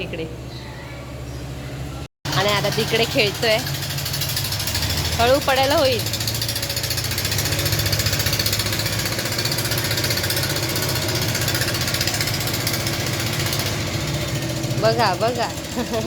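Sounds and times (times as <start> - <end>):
machine humming: 0.0 - 16.0
fast mechanical rattle: 2.3 - 16.0.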